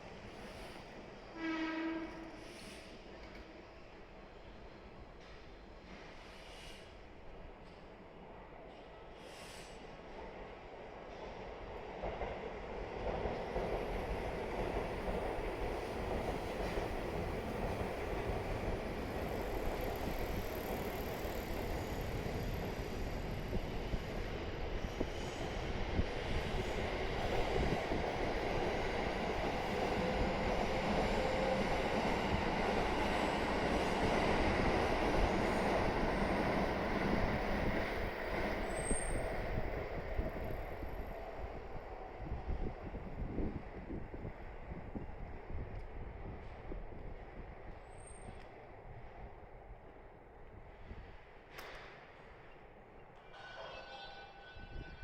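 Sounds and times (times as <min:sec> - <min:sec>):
electric train running on rails: 0:00.0 - 0:55.0.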